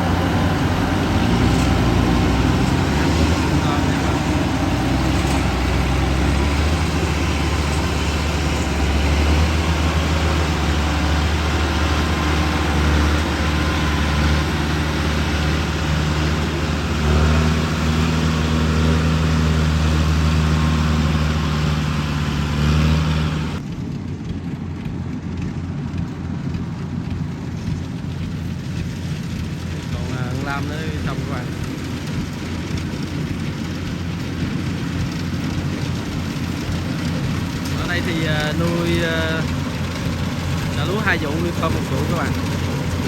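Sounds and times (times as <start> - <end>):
diesel engine drone: 0.0 - 43.0.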